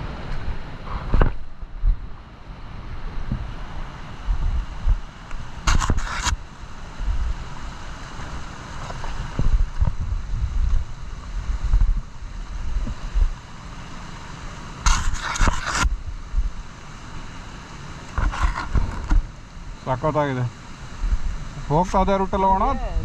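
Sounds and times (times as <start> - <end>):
wind buffeting microphone: 2.9 - 6.0, 9.1 - 13.4.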